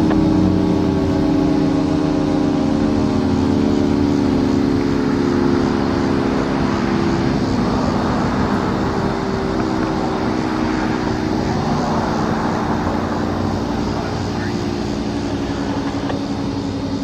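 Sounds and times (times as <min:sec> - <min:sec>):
rotating warning siren chord: 0:00.0 - 0:17.0.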